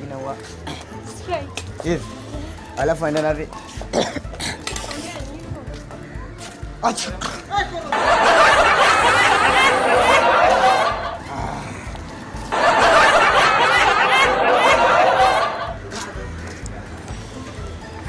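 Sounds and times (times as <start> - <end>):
laughter: 7.9 - 11.2, 12.5 - 15.8.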